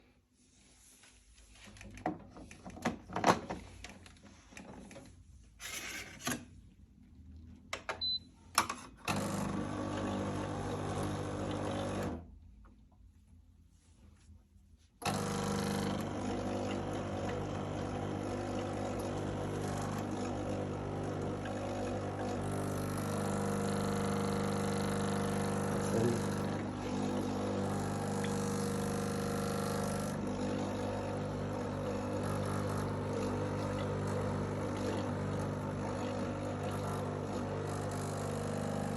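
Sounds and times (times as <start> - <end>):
espresso machine pump buzzing: 9.1 - 12.2, 15.0 - 38.9.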